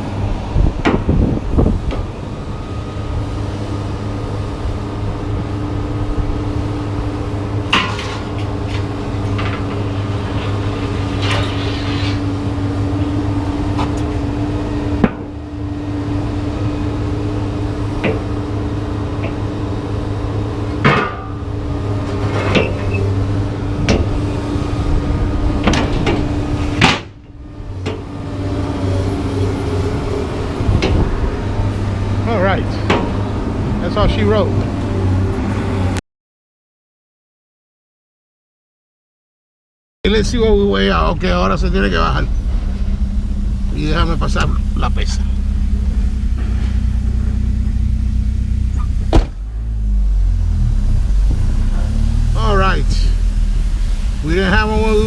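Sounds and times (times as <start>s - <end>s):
vehicle engine idling: 0.0s - 11.3s, 12.2s - 35.9s, 40.1s - 55.0s
scrap metal clanking: 7.7s - 12.4s.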